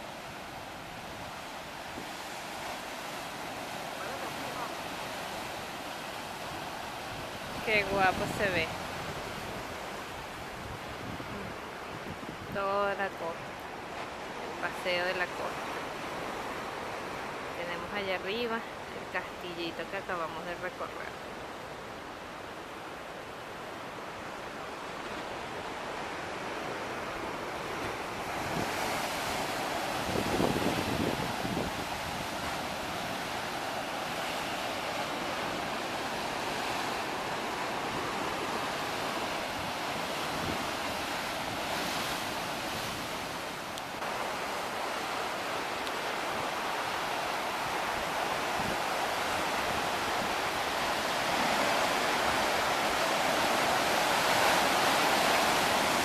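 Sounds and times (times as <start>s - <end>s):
waves washing on shore: 0.0s - 56.0s
wind buffeting microphone: 7.0s - 12.7s, 26.5s - 33.6s.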